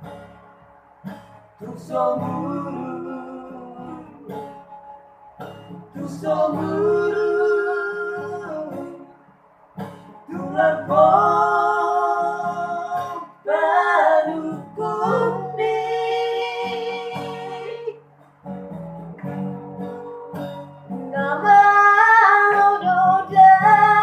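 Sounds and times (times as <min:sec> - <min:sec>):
strummed acoustic guitar: 0:00.0 - 0:24.0
person singing in a high key: 0:21.2 - 0:24.0.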